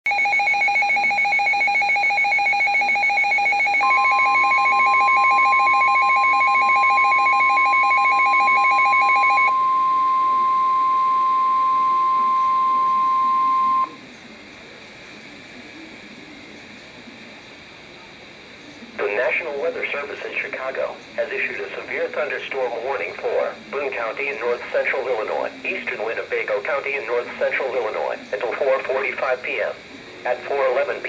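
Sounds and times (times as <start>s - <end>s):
alarm beeping rapidly: 0.1s - 14.0s
steady alarm tone: 0.1s - 14.0s
faint radio hiss: 9.4s - 31.0s.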